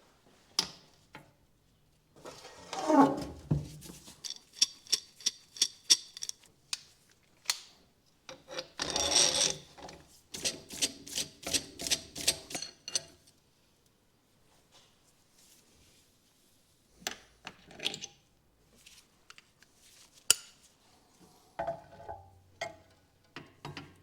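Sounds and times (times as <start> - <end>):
hand tools clicking on metal: 4.2 - 6.9.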